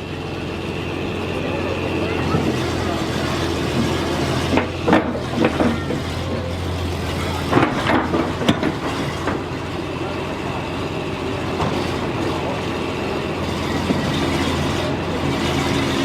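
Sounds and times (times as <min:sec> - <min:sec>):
backhoe engine running: 0:00.0 - 0:16.0.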